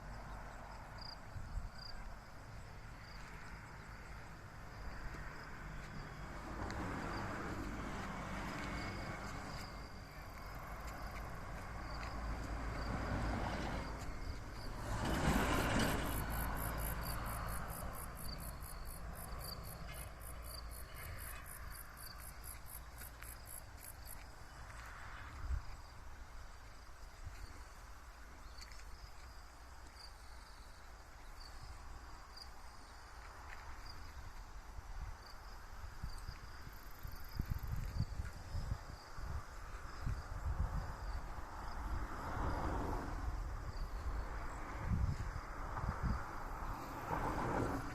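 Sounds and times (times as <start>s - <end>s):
insects chirping: 0.0s - 47.9s
rushing noise with low rumble: 4.0s - 21.7s, 37.0s - 47.9s.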